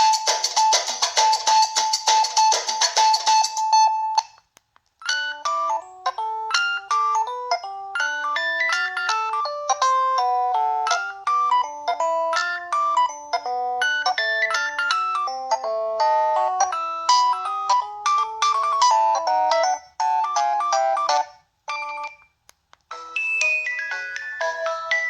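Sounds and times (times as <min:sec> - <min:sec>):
phone ringtone melody: 0:05.0 - 0:22.3, 0:22.9 - 0:25.0.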